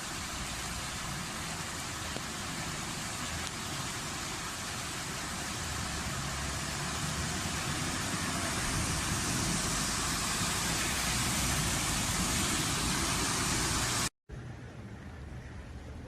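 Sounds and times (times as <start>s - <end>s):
heavy rain hissing: 0.0s - 14.1s
cars passing: 4.1s - 16.0s.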